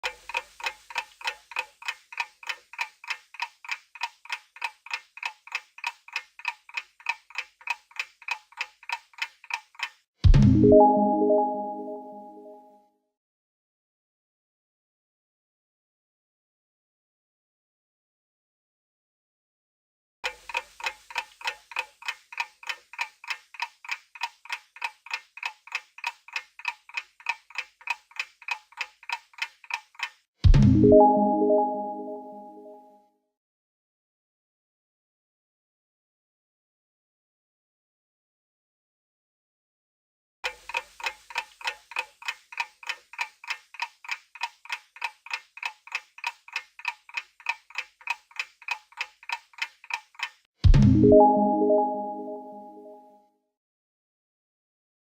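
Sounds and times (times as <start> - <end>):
clock ticking: 0.0 - 10.0, 20.2 - 30.3, 40.4 - 51.4.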